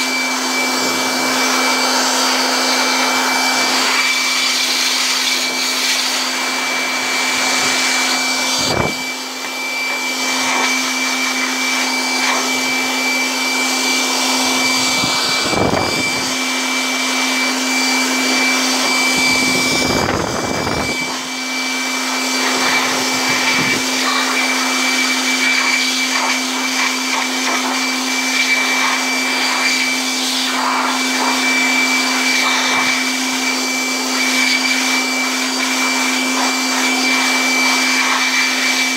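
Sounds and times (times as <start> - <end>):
air blower rushing air: 0.0 - 38.9.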